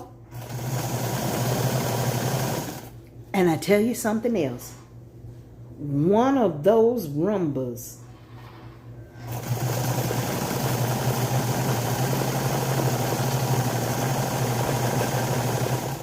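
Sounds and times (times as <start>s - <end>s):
sewing machine humming: 0.3s - 3.0s, 9.2s - 16.0s.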